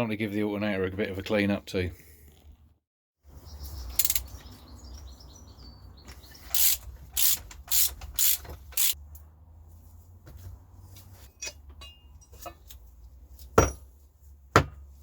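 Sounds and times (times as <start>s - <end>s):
ratchet spanner ratcheting: 3.9s - 4.3s, 6.4s - 9.0s.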